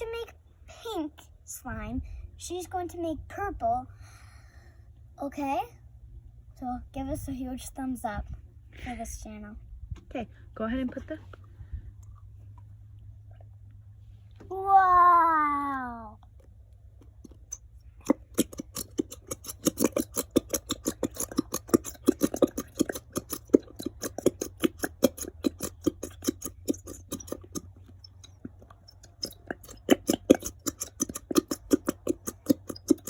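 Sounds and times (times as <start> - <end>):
utensil clicking and scraping container: 16.4 - 33.0.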